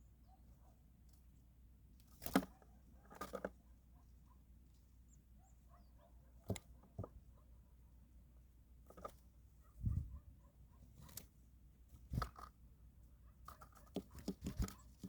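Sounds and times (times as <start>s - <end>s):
birds pecking at food: 2.0s - 4.9s, 8.8s - 9.5s, 10.5s - 15.0s.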